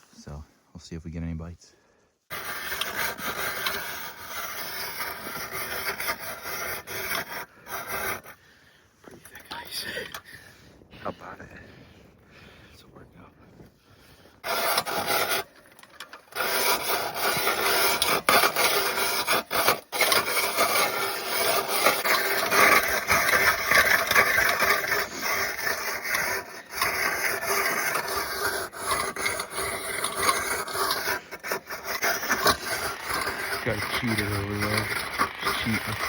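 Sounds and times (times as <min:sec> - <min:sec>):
ice auger scraping ice: 0:02.3 - 0:08.4, 0:14.4 - 0:36.0.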